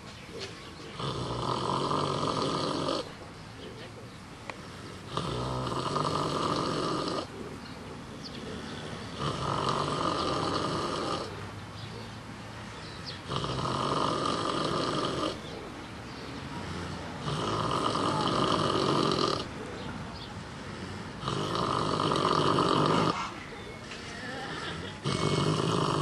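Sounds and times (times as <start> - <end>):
pig snoring: 0.9 - 3.2, 4.8 - 7.5, 8.3 - 11.4, 13.2 - 15.6, 16.6 - 19.6, 21.0 - 23.2, 24.3 - 26.0
quiet breathing: 3.0 - 13.7, 14.9 - 25.6.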